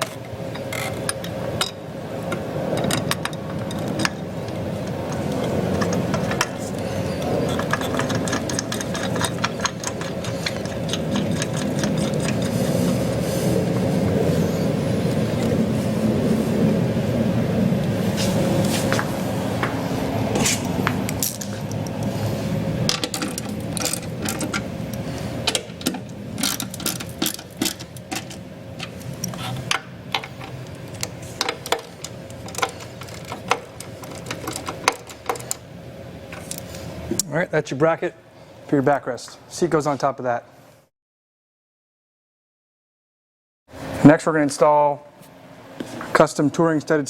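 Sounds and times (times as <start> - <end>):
steady mechanical running: 0.0 - 37.2.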